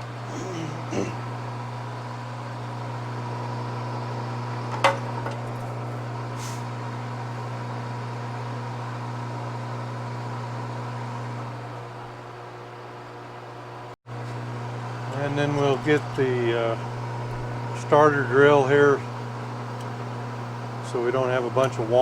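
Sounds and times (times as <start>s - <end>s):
metal lathe running: 14.4s - 22.0s.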